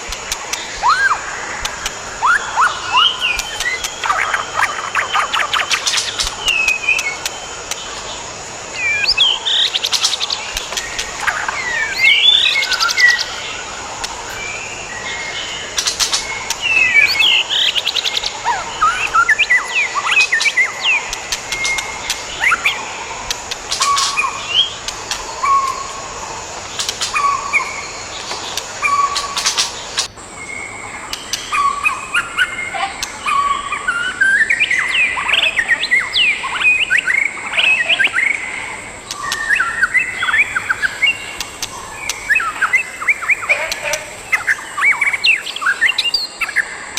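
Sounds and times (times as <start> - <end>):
birds chirping and whistling: 0.0 - 46.9
bird clicking notes: 3.2 - 4.8, 20.2 - 25.8.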